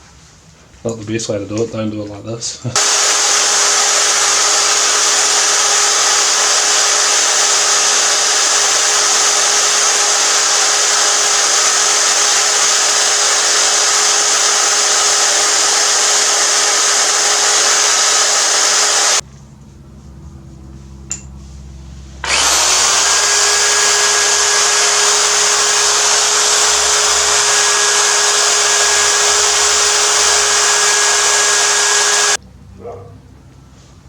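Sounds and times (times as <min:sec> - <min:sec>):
electric drill motor whine: 0:02.7 - 0:19.2, 0:22.2 - 0:32.4
wire wheel hissing on metal: 0:02.8 - 0:19.2.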